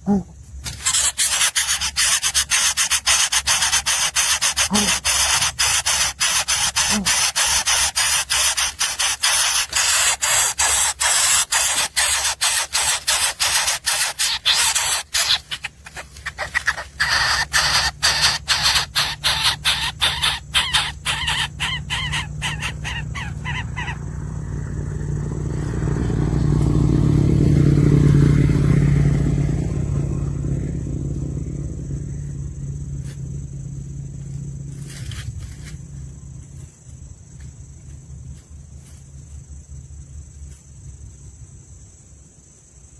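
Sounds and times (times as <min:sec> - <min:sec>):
baby birds begging calls: 0:00.7 - 0:24.1.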